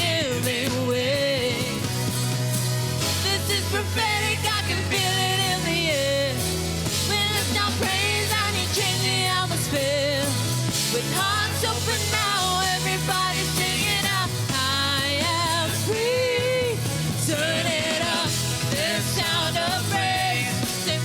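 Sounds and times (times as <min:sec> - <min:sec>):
person singing: 0:00.0 - 0:02.0, 0:03.2 - 0:21.0
band with steady bass line: 0:00.0 - 0:21.0.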